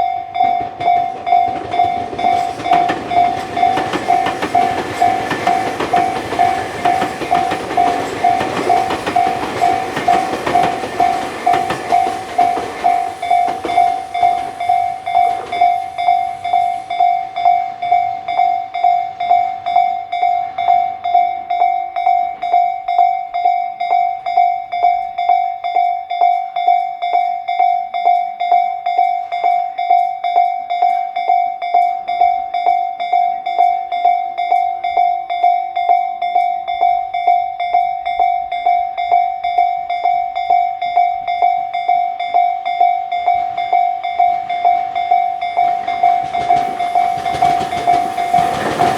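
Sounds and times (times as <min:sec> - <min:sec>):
train running past: 0:00.0 - 0:22.6, 0:33.9 - 0:48.9
level-crossing warning bell ringing: 0:00.0 - 0:48.9.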